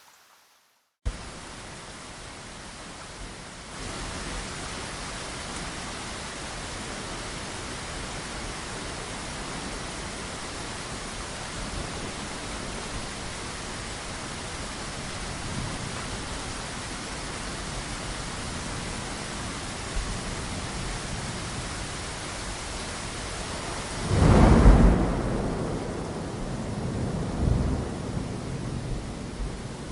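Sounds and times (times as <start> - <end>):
steady rain: 0.0 - 29.9
deep roll of thunder: 23.6 - 29.9.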